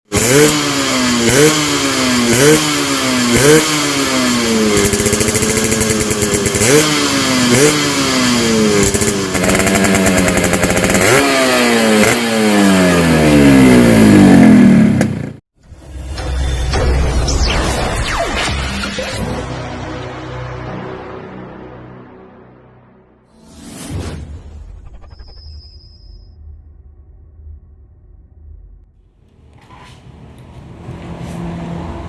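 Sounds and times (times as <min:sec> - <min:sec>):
motorcycle engine revving: 0:00.1 - 0:15.4
music: 0:15.6 - 0:23.4.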